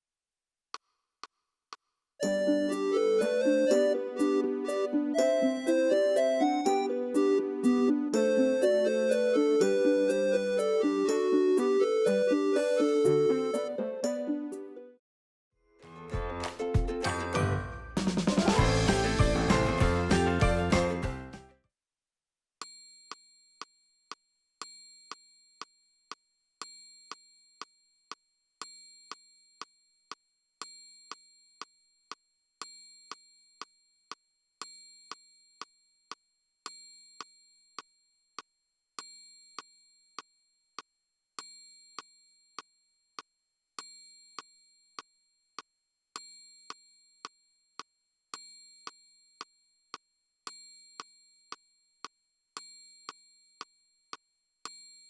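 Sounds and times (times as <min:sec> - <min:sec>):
keyboard bell-like ding: 0:16.2 - 0:19.0.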